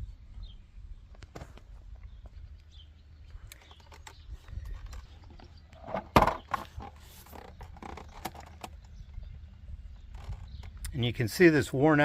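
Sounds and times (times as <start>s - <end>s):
handling clicks and knocks: 3.3s - 10.9s.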